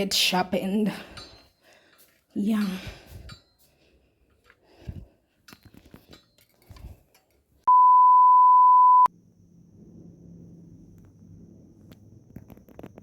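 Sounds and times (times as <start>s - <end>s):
faint clinks and knocks: 0.9s - 7.6s
loud electronic beep: 7.7s - 9.1s.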